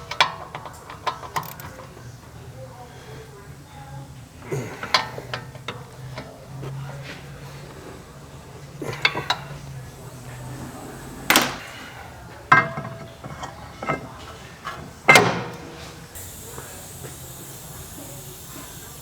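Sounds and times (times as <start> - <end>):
metal tools clanking: 0.0 - 2.0, 8.7 - 11.9.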